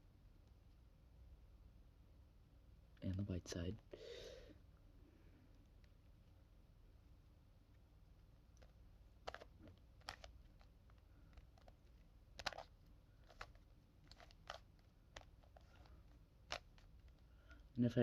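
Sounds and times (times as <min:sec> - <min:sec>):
plastic puzzle cube clicking: 0:08.6 - 0:10.6, 0:12.4 - 0:15.9.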